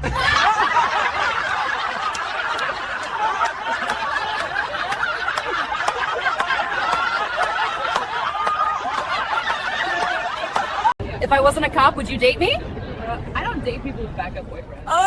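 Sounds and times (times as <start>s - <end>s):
people laughing and snickering: 0.0s - 10.9s.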